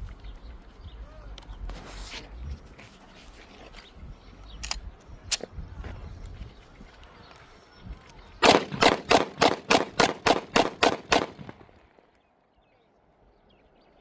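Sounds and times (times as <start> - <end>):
pistol shots: 8.4 - 11.6.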